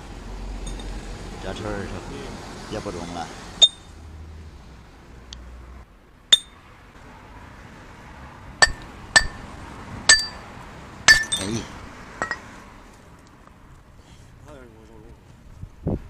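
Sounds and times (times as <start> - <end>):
metal parts clinking: 11.1 - 12.4.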